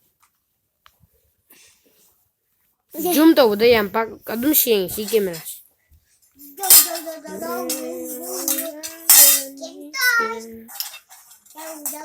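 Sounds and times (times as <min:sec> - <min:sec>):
kitchenware clattering: 0:03.1 - 0:05.6, 0:06.4 - 0:12.0
person singing long notes: 0:07.2 - 0:09.9.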